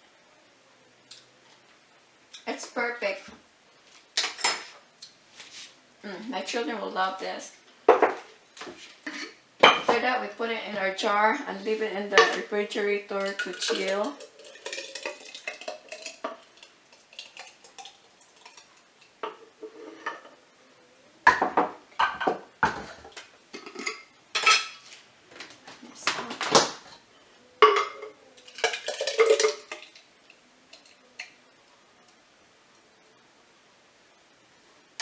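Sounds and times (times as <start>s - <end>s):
spoon scraping and clinking containers: 13.1s - 20.4s.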